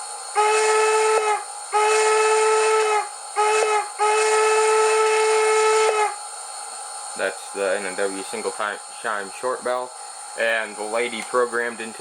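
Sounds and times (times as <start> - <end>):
steam whistle blasts: 0.0 - 6.2
faint steady hiss: 0.0 - 12.0.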